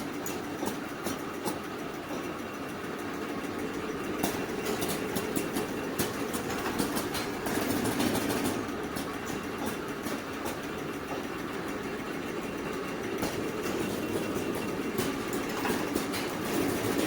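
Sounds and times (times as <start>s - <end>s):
machine parts clicking and clacking: 4.2s - 11.2s, 13.2s - 17.0s.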